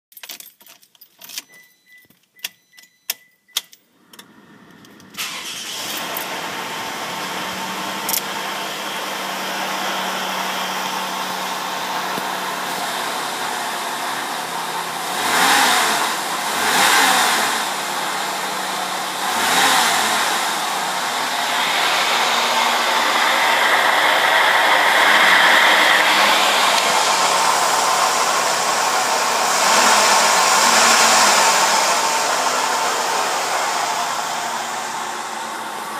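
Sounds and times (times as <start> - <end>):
faint repeated chime: 1.4 - 3.6
car engine running and revving: 4.2 - 35.9.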